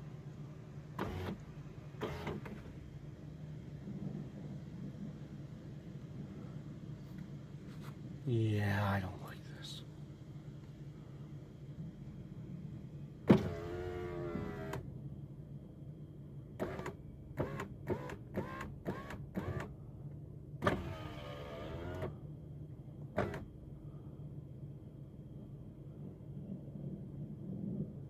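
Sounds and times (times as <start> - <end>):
steady low hum: 0.0 - 28.0
power window motor whining: 1.0 - 2.8, 13.3 - 14.8, 16.6 - 19.7, 20.6 - 22.2, 23.2 - 23.5.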